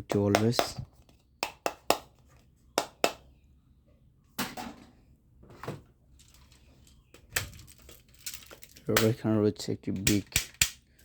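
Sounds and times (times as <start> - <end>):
plastic toys knocking and rustling: 5.6 - 9.2, 9.9 - 10.8
sharp plastic clicks: 10.0 - 10.8.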